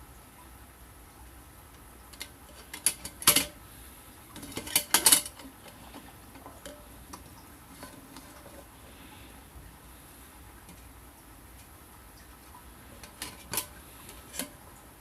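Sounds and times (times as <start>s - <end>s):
light metal pieces clinking: 2.1s - 3.5s, 4.4s - 5.5s.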